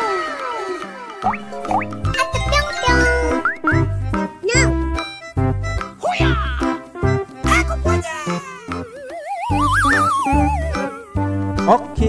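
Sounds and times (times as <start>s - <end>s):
gliding cartoon sound effect: 1.2s - 3.9s, 8.8s - 11.0s
upbeat playful music: 1.2s - 12.0s.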